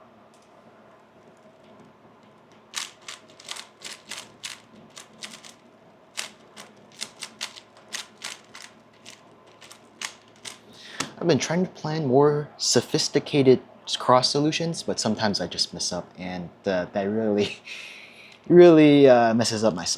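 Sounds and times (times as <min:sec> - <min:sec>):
puzzle cube plastic clacks: 0:02.7 - 0:05.6, 0:06.2 - 0:10.7.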